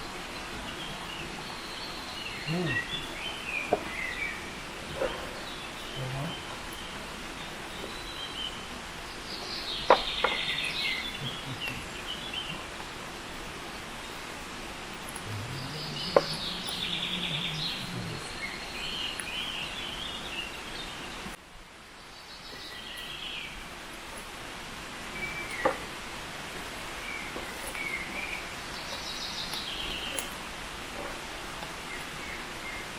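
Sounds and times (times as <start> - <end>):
outdoor hiss: 0.0 - 32.9
small birds chirping: 0.0 - 32.9
low hum: 11.1 - 19.8.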